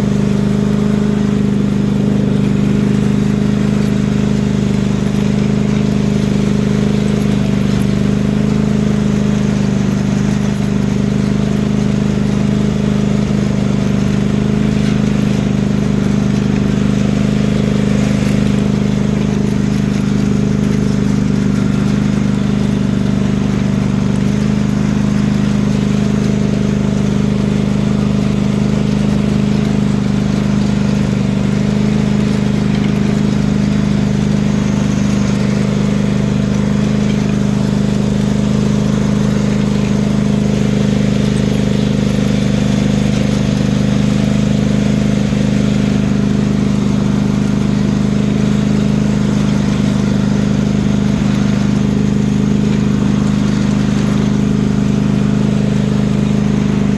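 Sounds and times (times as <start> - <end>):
loud lawn mower engine running: 0.0 - 56.9.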